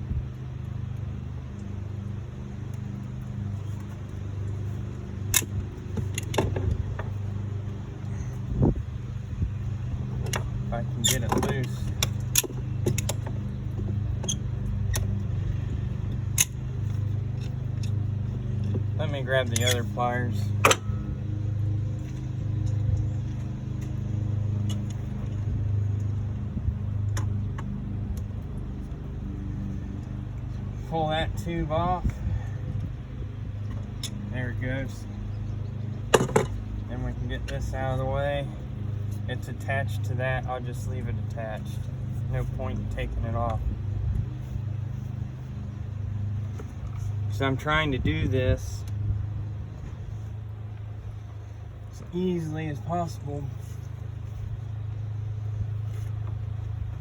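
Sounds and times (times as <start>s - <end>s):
steady low hum: 0.0s - 57.0s
metallic clicks of hand tools: 10.3s - 13.3s, 19.5s - 19.9s.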